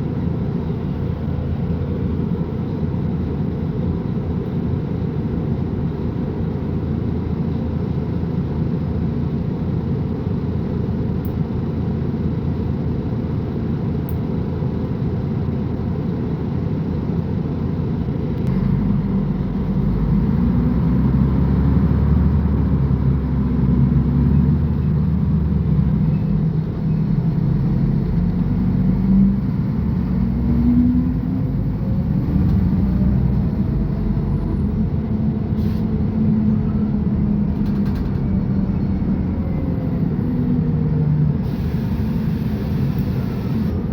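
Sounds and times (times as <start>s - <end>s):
bus diesel engine accelerating: 0.0s - 43.9s.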